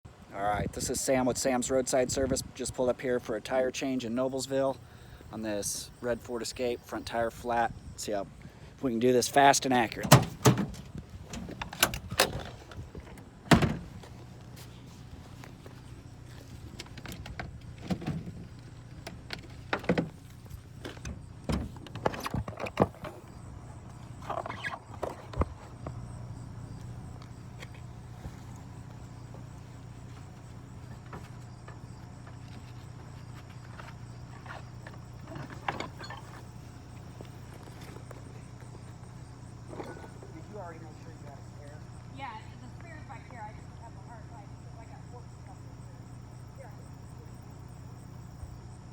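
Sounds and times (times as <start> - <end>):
vehicle idling hum: 0.1 - 48.9
gear knocking and clanking: 29.6 - 38.8.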